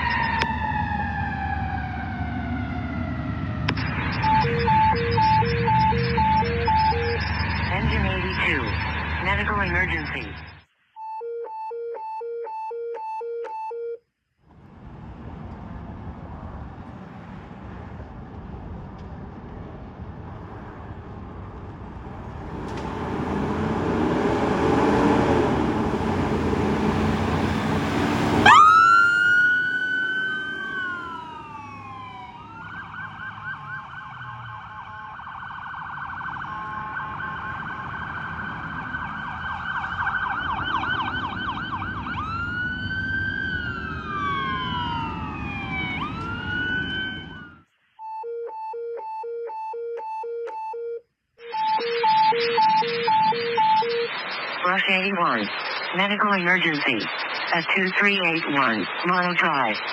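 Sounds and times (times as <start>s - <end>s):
fire truck engine rumble: 0.0s - 10.6s, 14.5s - 47.6s
siren wailing and yelping: 0.0s - 14.0s, 26.7s - 54.6s
loud rush of noise: 3.2s - 10.6s, 14.6s - 33.7s, 52.3s - 59.9s.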